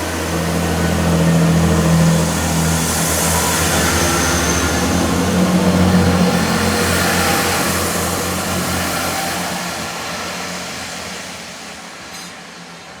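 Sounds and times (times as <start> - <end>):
train passing: 0.0 - 13.0.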